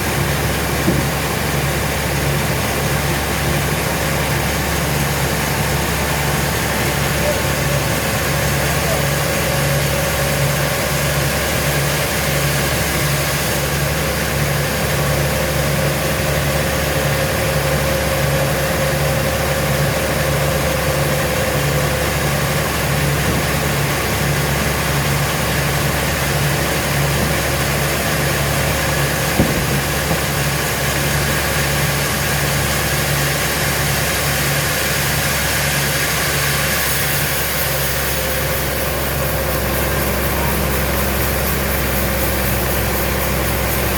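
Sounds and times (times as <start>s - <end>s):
engine idling: 0.0s - 43.9s
sharp knock: 29.3s - 30.6s.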